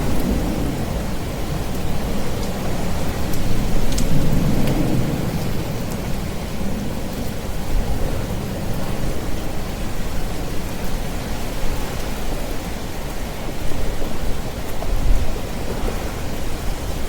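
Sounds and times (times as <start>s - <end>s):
low rumble of thunder: 0.0s - 11.9s
steady rain falling: 0.0s - 17.0s.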